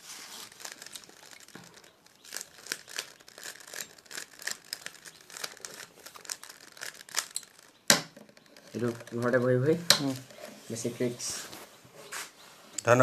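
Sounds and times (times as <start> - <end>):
plastic puzzle cube clicking: 0.4 - 10.4.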